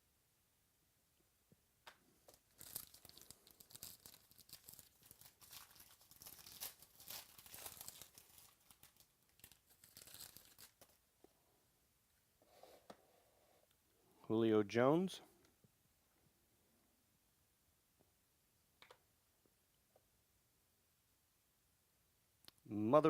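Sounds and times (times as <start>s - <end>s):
wrapper tearing and crinkling: 2.3s - 11.0s.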